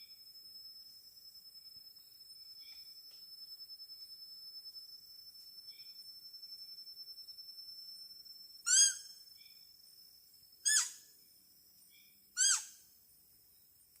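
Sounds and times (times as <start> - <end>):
deer call: 12.4 - 12.7.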